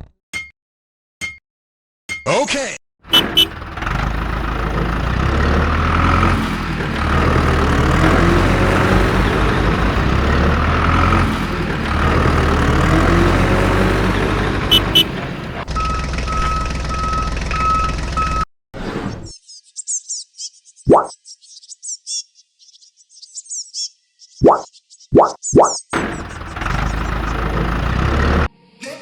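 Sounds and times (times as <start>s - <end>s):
heavy vehicle engine running: 3.1s - 18.5s, 26.0s - 28.5s
reversing alarm beeps: 15.7s - 18.5s.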